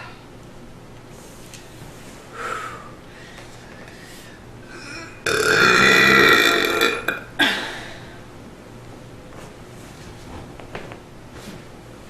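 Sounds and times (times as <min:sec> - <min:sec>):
woman burping: 0:04.7 - 0:07.8.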